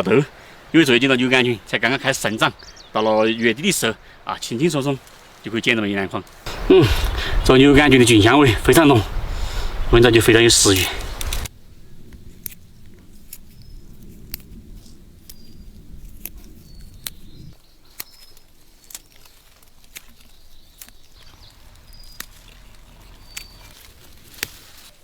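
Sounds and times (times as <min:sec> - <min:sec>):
sharp clicks and snaps: 0:10.8 - 0:24.9
low rumble: 0:11.0 - 0:17.6, 0:21.2 - 0:25.0.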